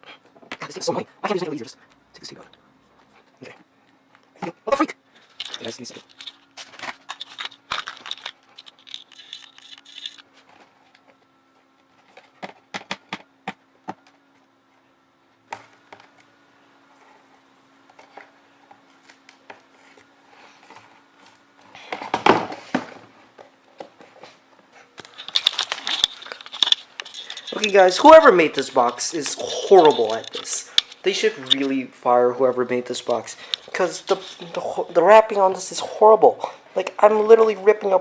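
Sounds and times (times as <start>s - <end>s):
faint steady hum: 0.0s - 38.0s
packaging being handled: 5.2s - 10.2s, 25.0s - 31.8s
packaging ripping: 5.5s - 10.2s.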